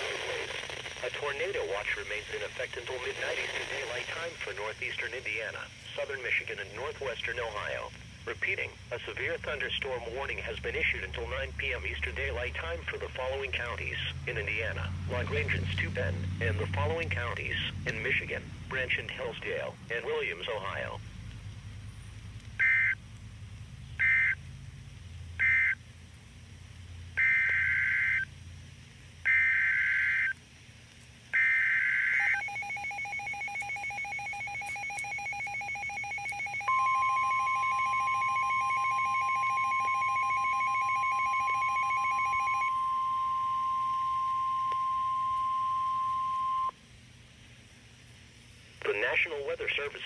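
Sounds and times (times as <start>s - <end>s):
buzzy data bursts: 0.0s - 21.0s
steady warning alarm tone: 22.6s - 23.0s, 24.0s - 24.4s, 25.4s - 25.8s, 27.2s - 28.3s, 29.3s - 30.4s, 31.4s - 46.8s.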